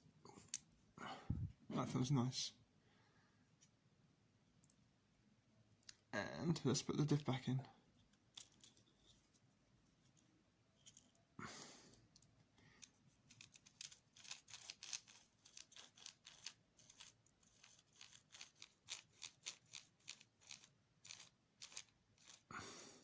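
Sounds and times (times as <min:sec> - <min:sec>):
plastic parts clicking and scraping: 0:08.0 - 0:11.2, 0:12.2 - 0:22.5.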